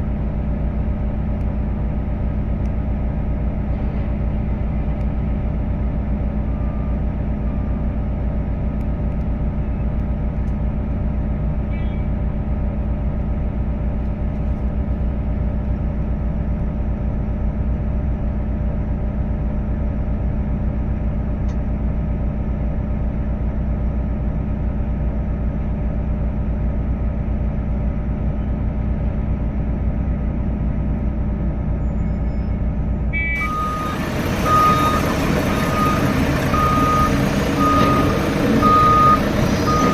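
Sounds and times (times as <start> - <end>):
heavy diesel engine running: 0.0 - 39.9
reversing beeper: 31.8 - 39.9.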